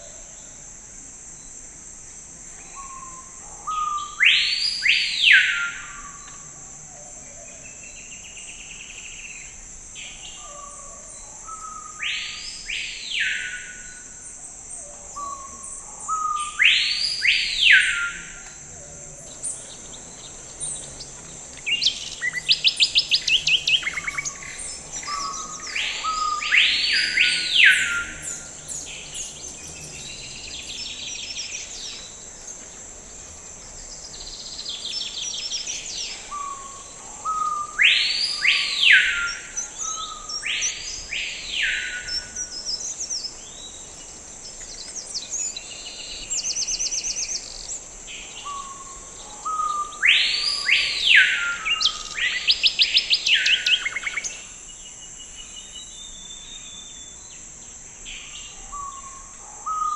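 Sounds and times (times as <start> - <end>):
high-pitched insect drone: 10.4 - 44.4.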